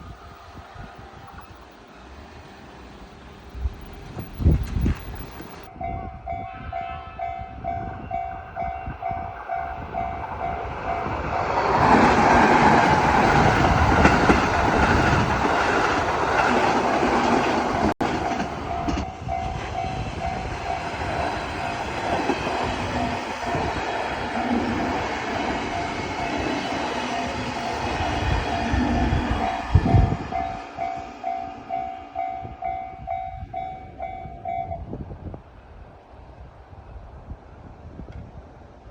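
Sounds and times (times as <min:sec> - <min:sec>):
train passing: 0:00.0 - 0:38.0
level-crossing warning bell ringing: 0:05.3 - 0:11.8, 0:17.7 - 0:34.9.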